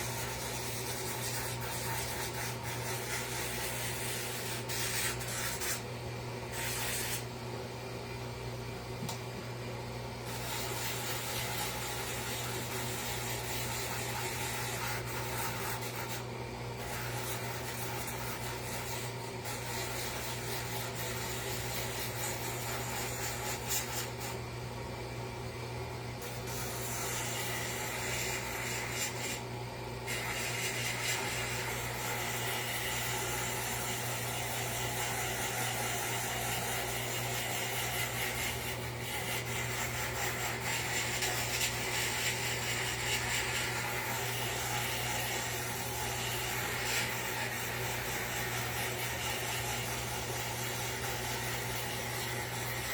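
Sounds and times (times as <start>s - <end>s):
gritty rasp of sanding wood: 0.0s - 5.8s, 10.3s - 16.2s, 16.8s - 24.3s, 30.1s - 52.9s
small power tool running: 0.0s - 5.8s, 10.2s - 16.2s, 26.2s - 52.9s.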